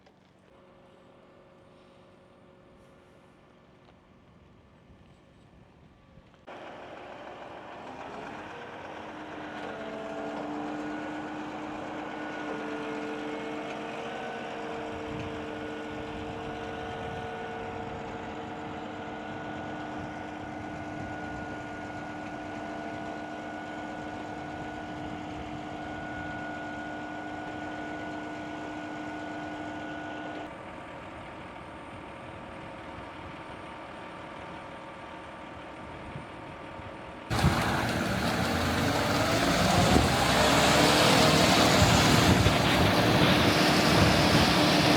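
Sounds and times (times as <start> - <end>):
truck diesel engine running: 6.5 - 21.4, 37.3 - 44.9
whining tones: 37.3 - 44.9.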